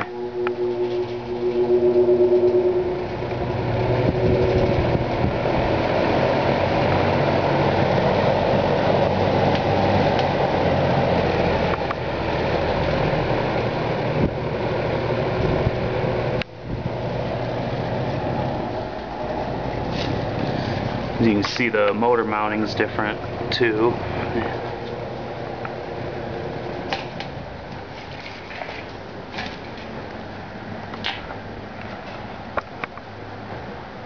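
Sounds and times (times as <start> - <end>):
box fan air rush: 0.0 - 22.1
electric motor low hum: 0.0 - 27.6.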